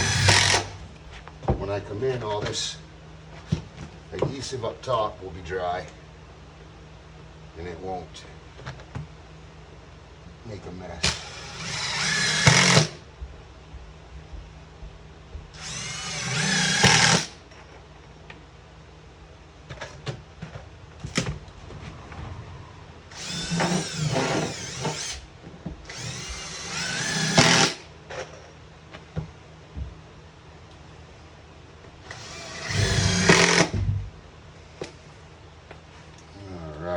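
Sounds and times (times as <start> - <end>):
power drill driving screws: 0.0 - 0.8, 11.0 - 13.0, 15.6 - 17.4, 23.1 - 25.2, 25.9 - 27.9, 32.1 - 33.8.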